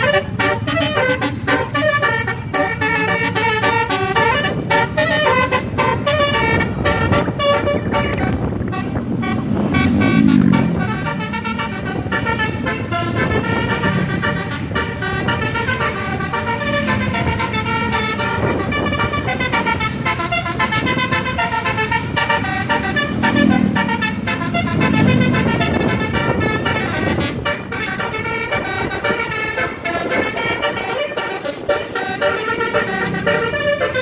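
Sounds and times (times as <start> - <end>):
bus engine running: 0.0 - 34.0
multi-tone bus horn tooting: 0.0 - 34.0.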